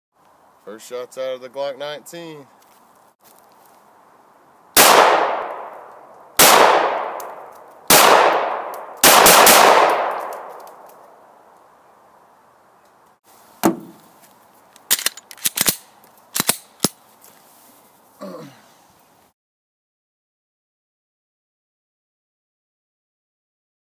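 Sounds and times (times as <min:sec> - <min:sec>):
pistol shots echoing: 0:04.8 - 0:10.6.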